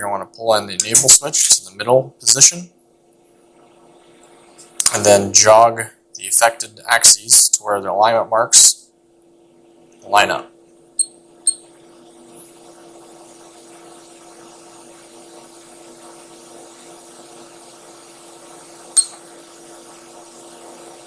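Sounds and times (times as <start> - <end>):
robot electrical hum: 0.0 - 2.7.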